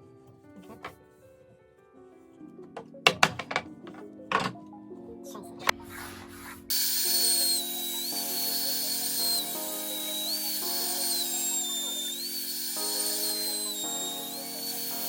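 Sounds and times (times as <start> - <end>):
background music: 0.1 - 15.0
power tool whining on metal: 6.7 - 15.0.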